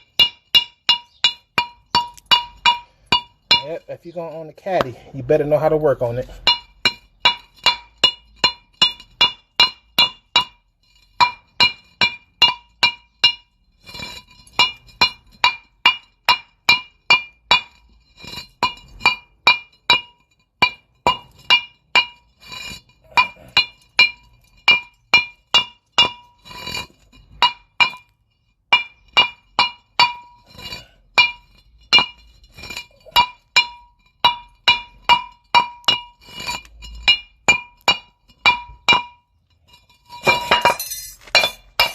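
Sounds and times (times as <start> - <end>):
hammer striking steel brake parts: 0.0 - 3.8, 33.0 - 39.3, 40.0 - 41.9.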